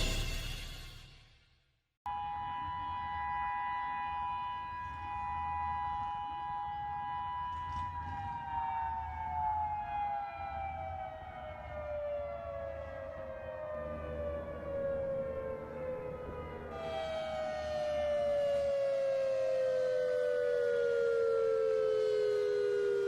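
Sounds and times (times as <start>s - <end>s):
warning siren falling tone: 2.1s - 23.0s.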